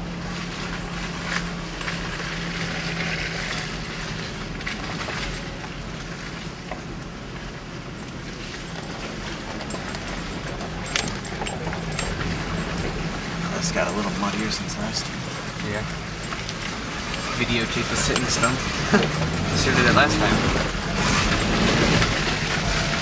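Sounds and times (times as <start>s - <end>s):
pickup engine drone: 0.0s - 23.0s
knocks and rattles: 7.9s - 23.0s.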